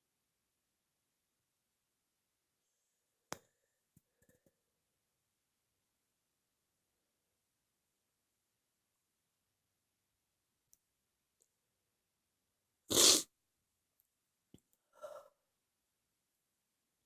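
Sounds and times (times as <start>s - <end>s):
person sneezing: 12.9s - 13.3s.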